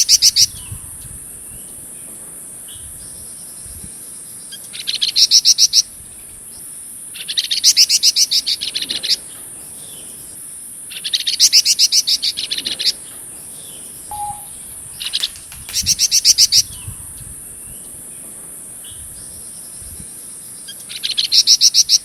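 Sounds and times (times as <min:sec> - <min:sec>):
songbird trilling: 0:14.1 - 0:16.8.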